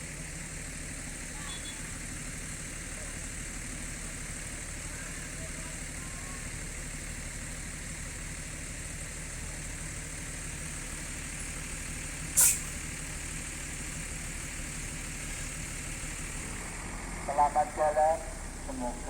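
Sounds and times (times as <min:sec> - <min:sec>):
bus diesel engine idling: 0:00.0 - 0:19.0
air brakes hiss: 0:12.3 - 0:12.8.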